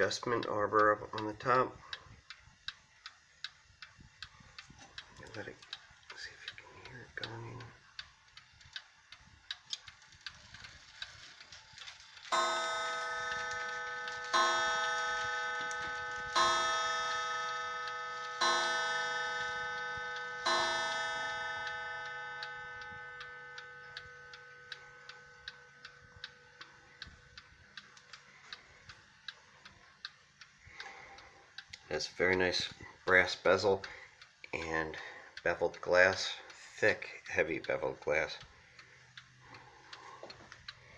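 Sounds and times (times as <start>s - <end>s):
clock ticking: 0.0s - 11.2s, 11.8s - 40.9s
clock striking a gong: 12.3s - 25.9s.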